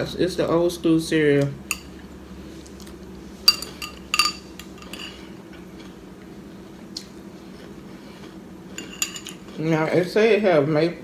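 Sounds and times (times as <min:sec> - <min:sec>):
spoon clinking against bowl: 0:03.5 - 0:05.2, 0:08.8 - 0:09.4.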